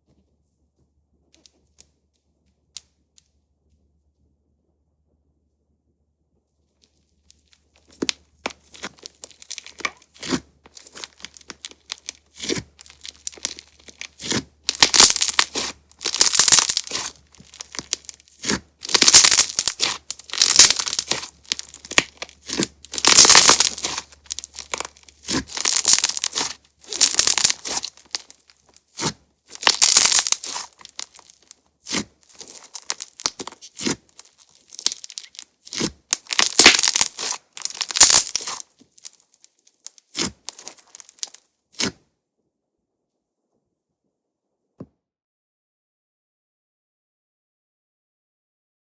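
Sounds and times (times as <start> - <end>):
slime crackling and popping: 7.8 - 41.9.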